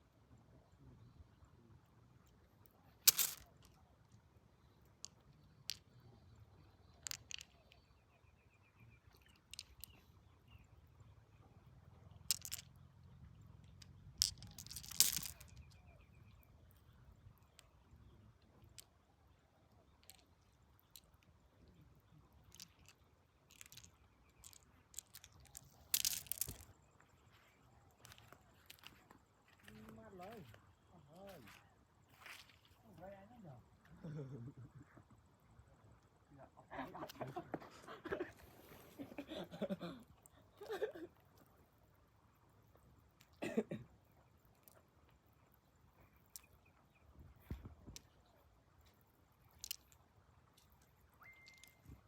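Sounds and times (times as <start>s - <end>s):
hard objects clicking: 3.0s - 3.8s, 6.9s - 7.9s, 9.1s - 10.0s, 12.3s - 12.8s, 13.6s - 15.8s, 22.4s - 26.8s, 49.5s - 50.0s.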